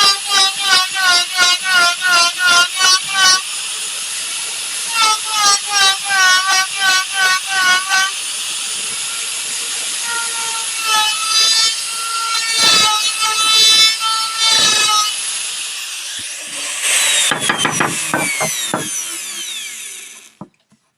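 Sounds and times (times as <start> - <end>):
router bit cutting wood: 0.0 - 20.6
router motor whining: 5.9 - 20.6.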